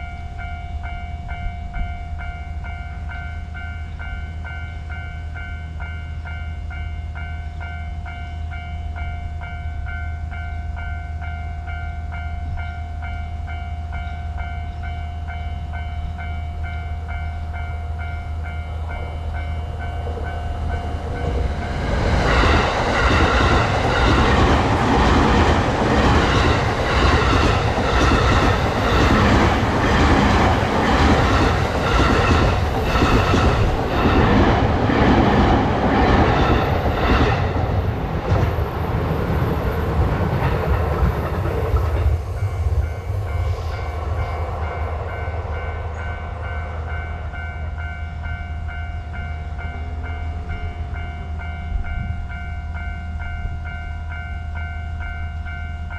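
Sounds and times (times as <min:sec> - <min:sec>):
level crossing warning bell: 0:00.0 - 0:40.4, 0:42.7 - 0:55.9
train wheels clacking on rails: 0:15.8 - 0:52.9.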